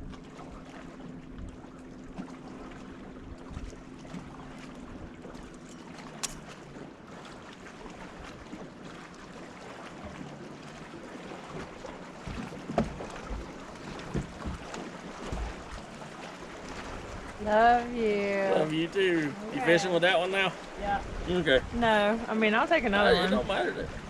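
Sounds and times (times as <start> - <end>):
water noise around boat: 0.0 - 24.0
wind: 0.0 - 24.0
dull knocks and thumps: 12.2 - 15.6.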